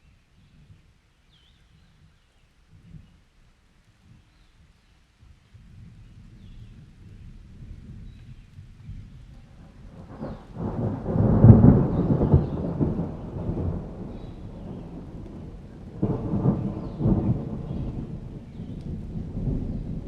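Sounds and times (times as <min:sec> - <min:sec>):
steady rain: 0:00.0 - 0:20.0
rolling thunder: 0:08.9 - 0:20.0.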